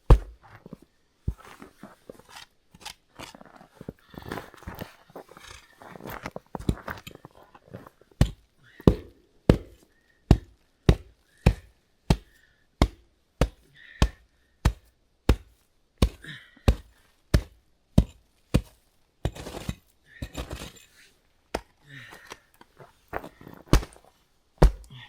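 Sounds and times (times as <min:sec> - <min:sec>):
axe chopping wood: 0:00.1 - 0:00.4, 0:08.2 - 0:20.7, 0:21.5 - 0:21.7, 0:23.6 - 0:24.0, 0:24.6 - 0:25.0.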